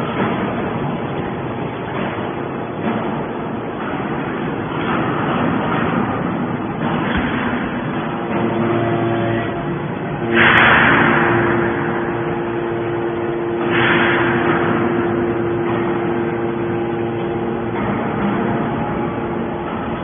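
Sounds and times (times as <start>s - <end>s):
baler motor and pump hum: 0.0s - 20.0s
loud burst of machine noise: 0.0s - 20.0s.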